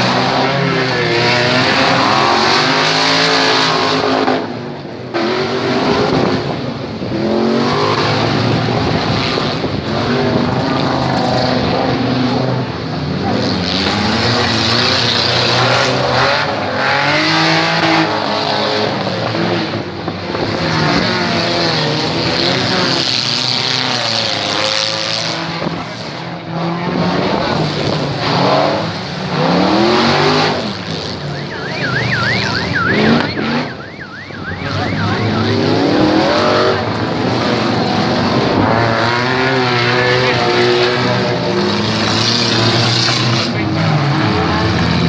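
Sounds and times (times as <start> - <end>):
tyres skidding: 0.0 - 4.1, 7.7 - 16.4, 20.8 - 26.1, 27.5 - 45.0
car engines revving: 0.0 - 45.0.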